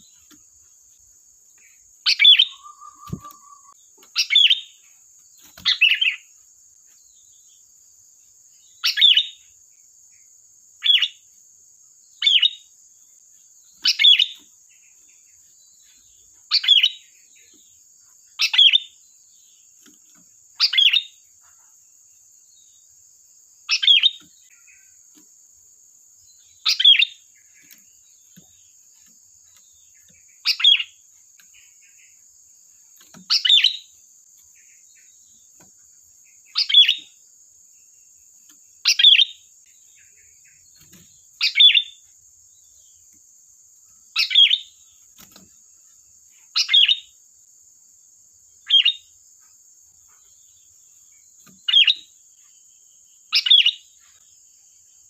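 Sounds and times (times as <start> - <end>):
bird giving sharp calls: 2.1 - 4.5.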